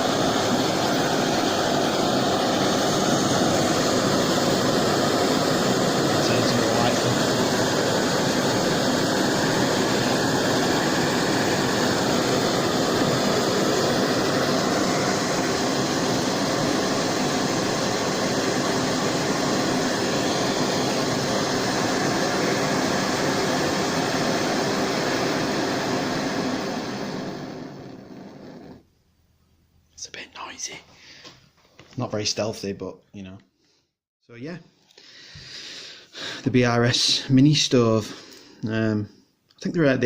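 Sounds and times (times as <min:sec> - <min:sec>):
gas stove burner hissing: 0:00.0 - 0:28.8.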